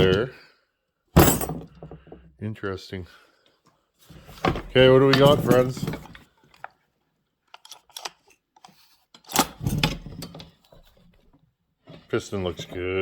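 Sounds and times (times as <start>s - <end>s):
metal clunk and clatter: 1.2s - 2.3s, 4.4s - 6.2s, 9.4s - 11.0s.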